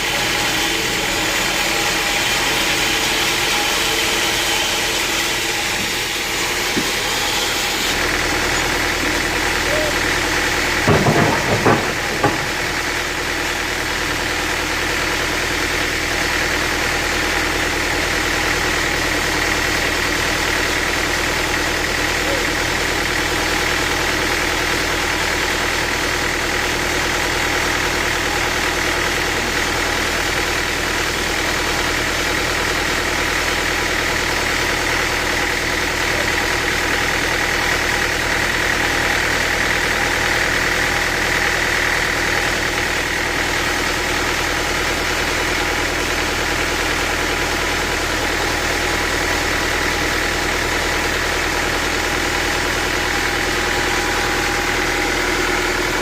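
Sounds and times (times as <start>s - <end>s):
high machine whine: 0.0s - 13.8s.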